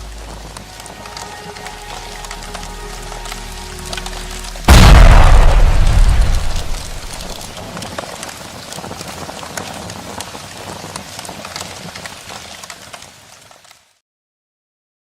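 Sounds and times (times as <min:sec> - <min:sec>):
small crackling clicks: 0:00.0 - 0:04.6, 0:06.3 - 0:14.0
low rumble of a boom: 0:04.7 - 0:07.5.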